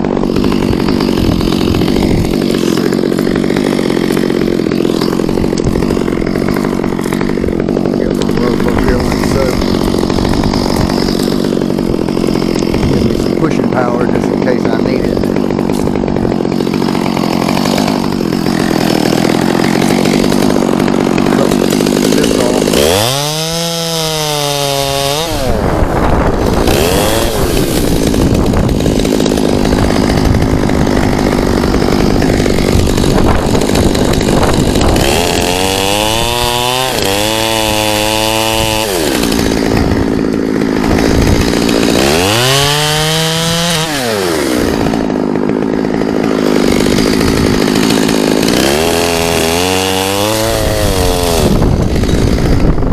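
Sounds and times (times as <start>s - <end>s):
chainsaw cutting through wood: 0.0s - 52.9s.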